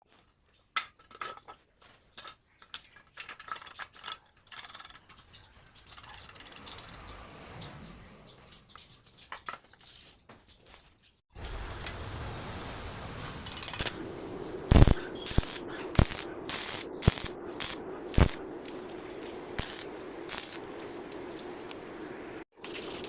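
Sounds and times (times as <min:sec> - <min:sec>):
metallic clicks and knocks: 0:00.8 - 0:07.0
drill scraping: 0:14.7 - 0:18.4.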